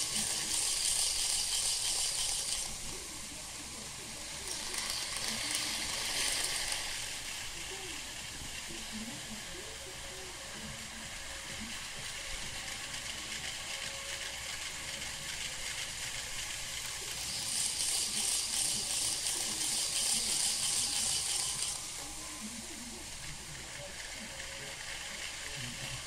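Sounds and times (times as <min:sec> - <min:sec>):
small wheels clicking: 0:00.0 - 0:02.9, 0:04.3 - 0:08.0, 0:12.0 - 0:22.1
model train motor whir: 0:00.0 - 0:26.0.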